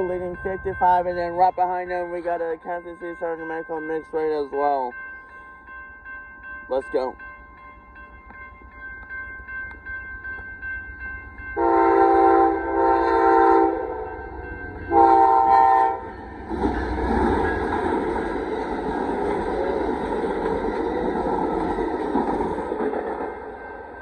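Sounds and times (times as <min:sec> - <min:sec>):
train passing close by: 0:00.0 - 0:24.0
locomotive air horn blasts: 0:11.6 - 0:14.1, 0:14.9 - 0:16.1.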